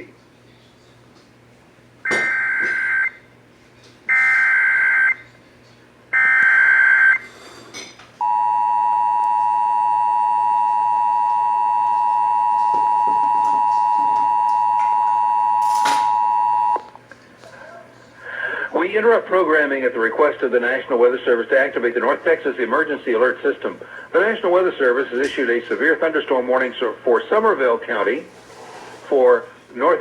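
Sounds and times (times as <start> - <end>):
two-tone attention signal: 2.1 - 3.2, 4.1 - 5.2, 8.2 - 16.8.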